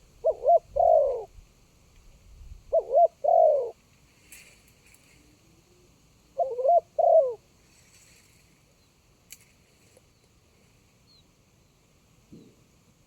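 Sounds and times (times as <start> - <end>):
dove cooing: 0.0 - 1.4, 2.7 - 3.8, 5.3 - 7.4
faint sharp click: 9.3 - 10.4.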